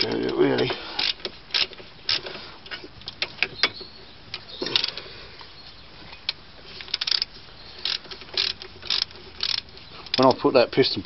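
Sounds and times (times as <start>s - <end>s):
ratchet clicking: 6.8s - 10.4s.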